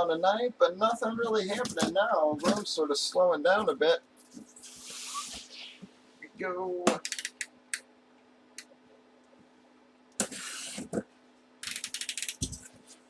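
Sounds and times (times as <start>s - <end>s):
sharp clicks: 6.9s - 7.9s.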